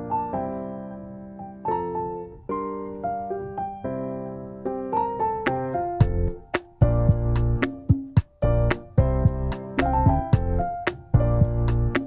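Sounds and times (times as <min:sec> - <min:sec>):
keyboard tune with bass and beat: 0:04.6 - 0:12.0.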